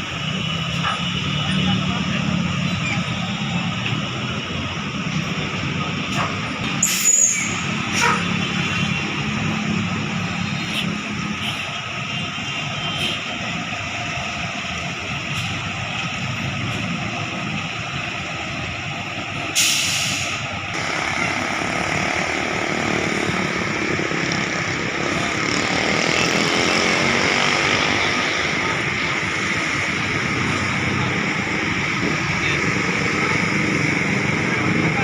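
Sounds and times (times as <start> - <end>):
bus engine running: 0.0 - 35.0
air brake hiss: 19.5 - 20.5.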